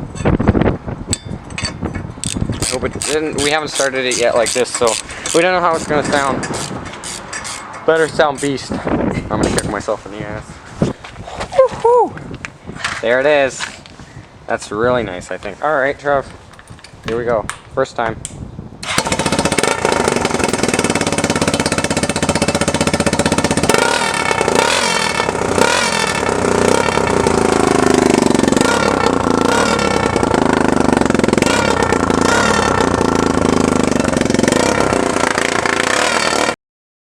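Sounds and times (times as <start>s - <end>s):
atv engine revving: 2.2s - 8.7s, 18.8s - 36.6s.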